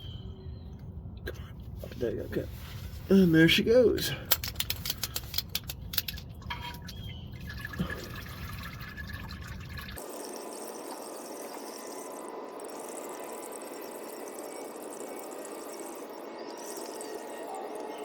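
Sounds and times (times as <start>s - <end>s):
oil trickling into a pan: 6.4s - 10.0s.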